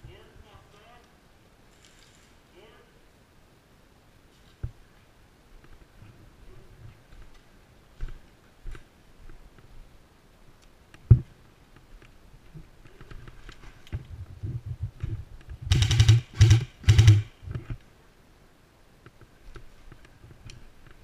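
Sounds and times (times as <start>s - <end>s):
rapid clicking: 15.7s - 17.3s.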